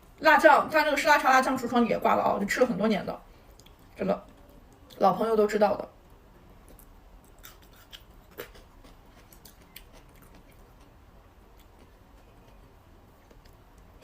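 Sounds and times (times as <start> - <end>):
person chewing: 6.6 - 13.9.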